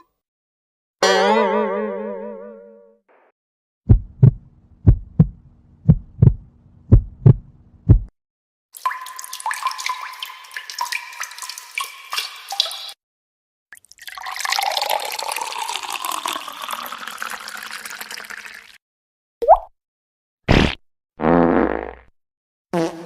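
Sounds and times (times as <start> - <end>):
heartbeat thumps: 3.9 - 8.1
water drips and gurgles: 8.8 - 13.0, 13.7 - 18.8.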